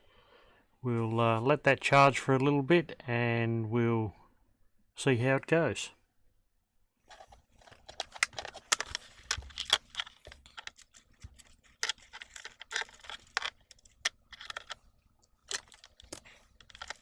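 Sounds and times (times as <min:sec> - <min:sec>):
small hard objects clicking: 0:07.8 - 0:17.0.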